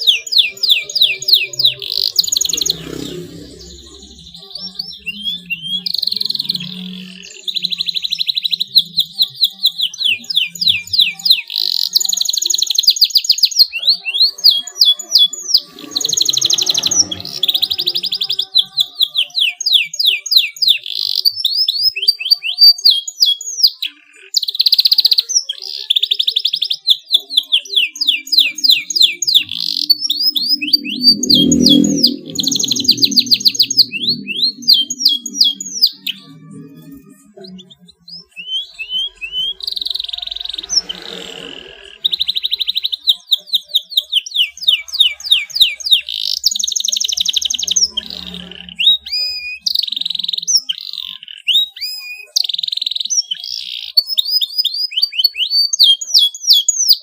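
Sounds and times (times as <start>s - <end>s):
canary singing trills: 0.0s - 57.0s.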